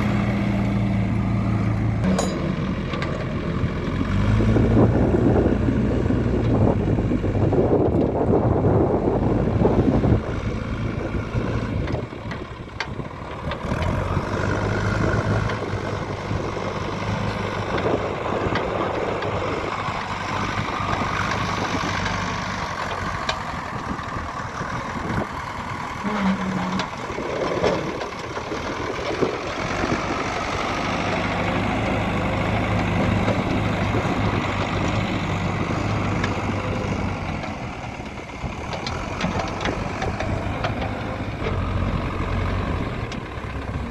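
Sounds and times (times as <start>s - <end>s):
diesel engines running: 0.0s - 43.9s
low engine hum: 0.0s - 43.9s.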